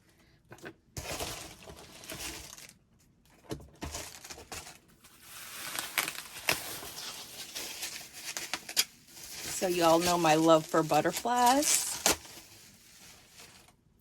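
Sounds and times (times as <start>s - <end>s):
packaging crinkling and tearing: 1.0s - 2.8s, 3.8s - 13.8s.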